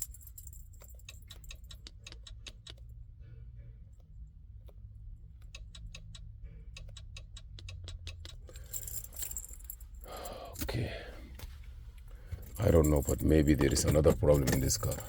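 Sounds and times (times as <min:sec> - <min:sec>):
rapid light clicks: 0:00.0 - 0:02.9, 0:04.6 - 0:09.4.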